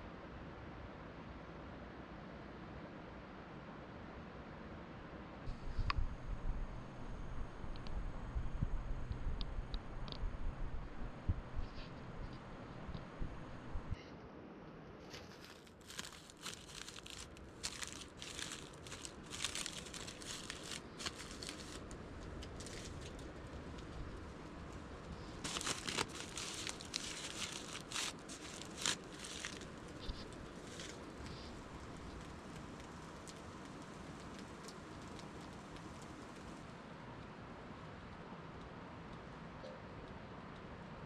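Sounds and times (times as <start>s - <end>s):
wrapping crinkling and rustling: 15.0s - 36.6s.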